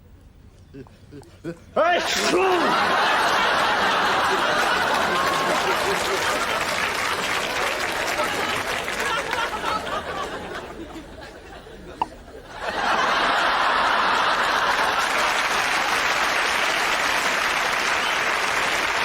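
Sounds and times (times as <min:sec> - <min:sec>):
audience murmur: 0:01.8 - 0:12.7
audience applause: 0:01.9 - 0:10.8, 0:12.7 - 0:19.0
light audience laughter: 0:02.0 - 0:16.1.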